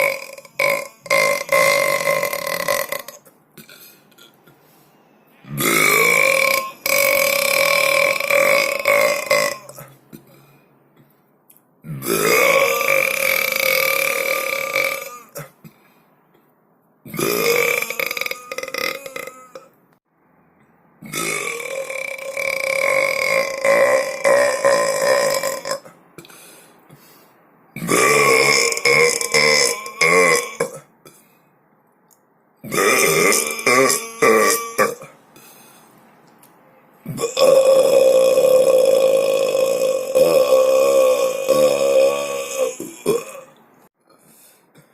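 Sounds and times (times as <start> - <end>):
person burping loudly: 0.0 - 4.4, 5.4 - 10.4, 11.8 - 15.8, 17.1 - 19.8, 21.0 - 26.3, 27.8 - 31.2, 32.6 - 35.2, 37.0 - 43.6.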